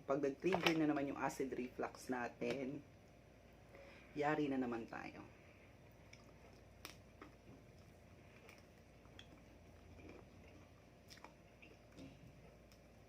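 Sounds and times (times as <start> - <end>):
person chewing: 5.8 - 13.0.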